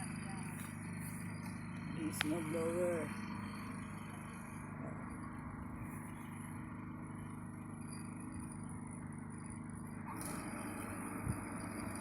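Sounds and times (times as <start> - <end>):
snowblower engine running: 0.0 - 12.0.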